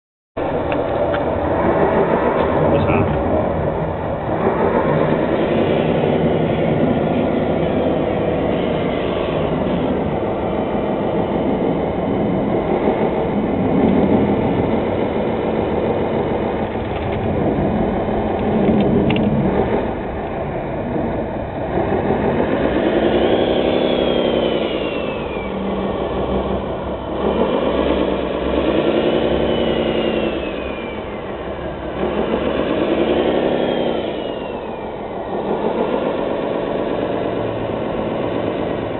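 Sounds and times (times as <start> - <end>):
toy vehicle engine sound: 21.9 - 38.9.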